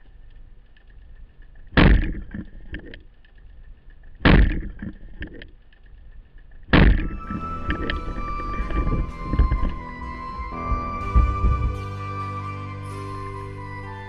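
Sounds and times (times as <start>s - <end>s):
low water rumble: 6.7s - 13.9s.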